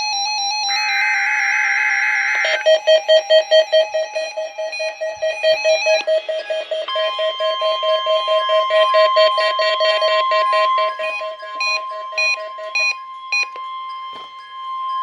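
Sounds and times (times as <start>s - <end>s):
mobile phone ringtone: 0.0s - 15.0s
fast pulsing beep: 2.5s - 13.9s.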